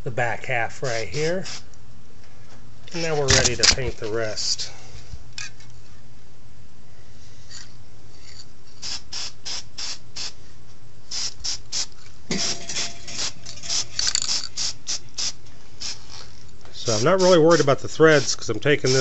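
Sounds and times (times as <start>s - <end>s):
steady low hum: 0.0s - 19.0s
paint sprayer hissing bursts: 8.8s - 10.4s, 11.1s - 16.2s, 16.8s - 19.0s.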